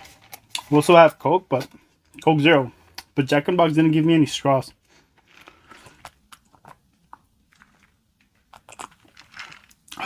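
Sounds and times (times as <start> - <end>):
crackly chewing: 4.8 - 10.0
crisp bites of crunchy food: 4.9 - 10.0.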